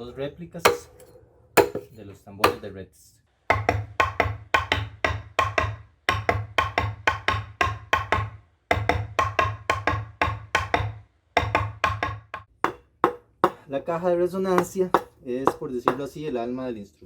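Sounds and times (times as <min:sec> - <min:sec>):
wooden percussion knocks: 0:03.5 - 0:13.6, 0:14.6 - 0:16.1.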